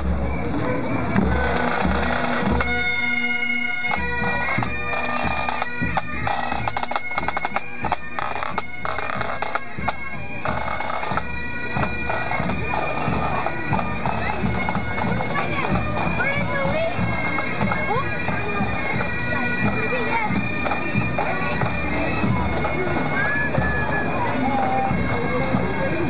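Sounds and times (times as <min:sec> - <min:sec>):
bagpipes playing a tune: 0:00.0 - 0:26.0
drum beats: 0:00.0 - 0:26.0.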